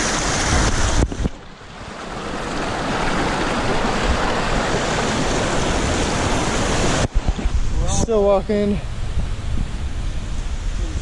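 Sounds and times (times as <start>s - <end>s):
river flowing over rocks: 0.0s - 7.2s.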